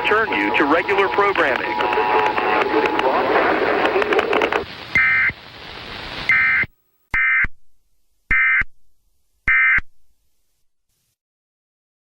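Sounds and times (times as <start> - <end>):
warbling electronic data tones: 0.0 - 5.4
faint hiss: 0.0 - 6.7.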